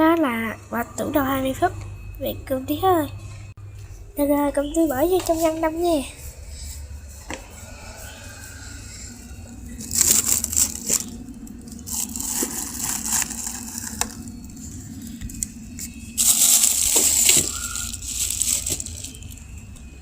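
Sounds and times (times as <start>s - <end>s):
rustling and crinkling handling noise: 9.6s - 19.7s.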